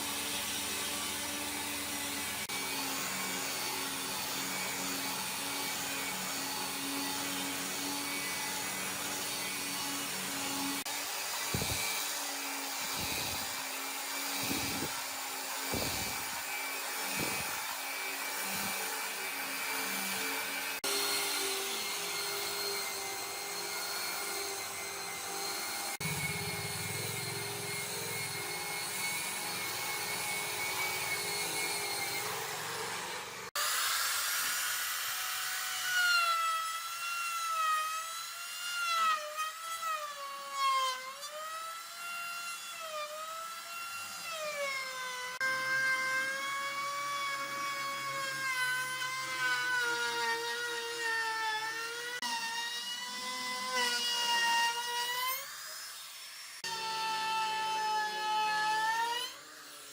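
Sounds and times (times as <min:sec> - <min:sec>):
power tool motor whine: 0:00.0 - 0:36.1
power tool motor hum: 0:00.2 - 0:36.0.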